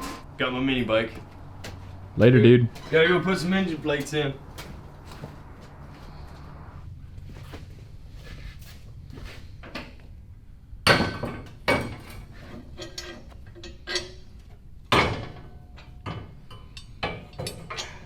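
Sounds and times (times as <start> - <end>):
metal clanks: 10.9 - 18.0.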